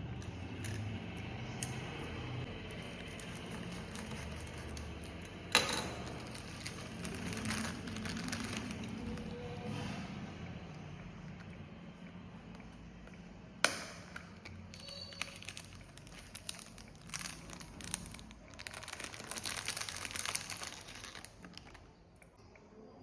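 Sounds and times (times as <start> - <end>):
packaging crinkling and rustling: 2.4 - 9.7, 14.7 - 21.9.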